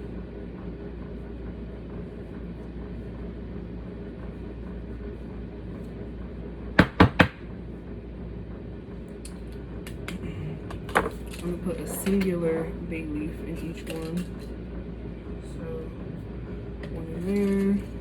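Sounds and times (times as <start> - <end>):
steady low hum: 0.0 - 18.0
sharp knocks: 6.8 - 7.4.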